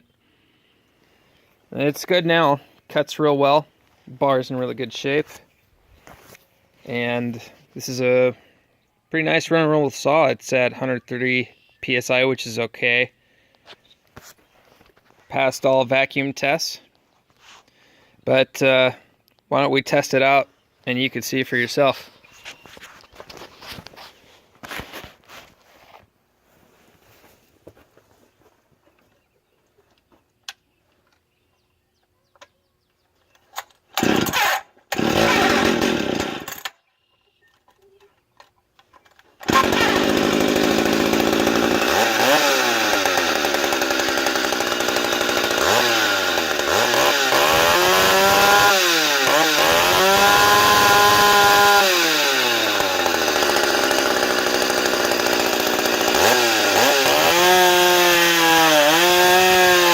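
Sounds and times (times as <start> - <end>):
chainsaw starting and revving: 33.9 - 36.7, 39.4 - 59.9.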